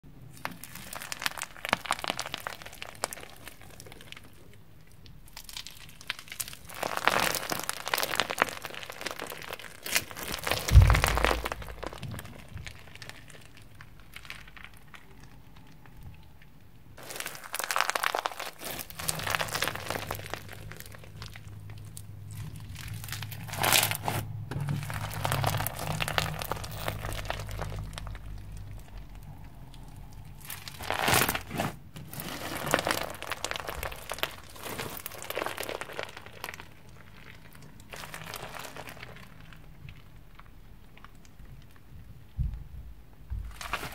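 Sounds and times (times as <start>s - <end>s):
foam slime crackling and popping: 0.1s - 42.4s, 43.4s - 43.9s
low thump: 10.6s - 12.4s.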